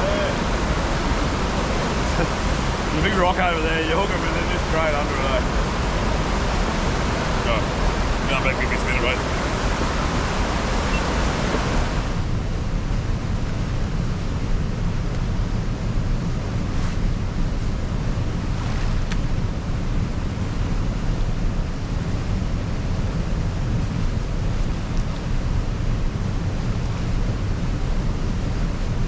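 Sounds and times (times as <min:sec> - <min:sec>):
flowing river water: 0:00.0 - 0:12.4
wind rumbling on microphone: 0:00.0 - 0:29.0.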